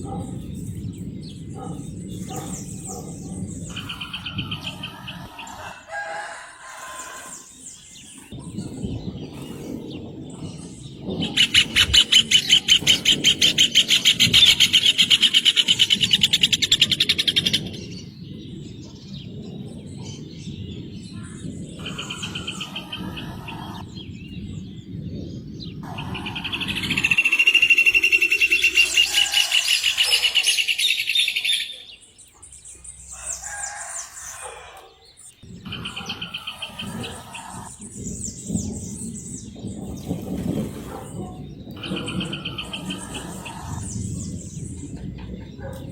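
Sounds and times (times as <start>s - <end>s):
low rumble: 8.3s - 30.0s, 35.3s - 45.9s
bird singing rapid trills: 21.5s - 34.3s.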